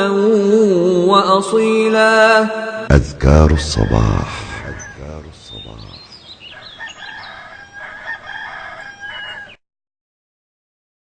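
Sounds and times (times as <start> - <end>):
rooster crowing: 3.5 - 5.3, 6.4 - 9.6
high chirping calls: 3.5 - 9.6.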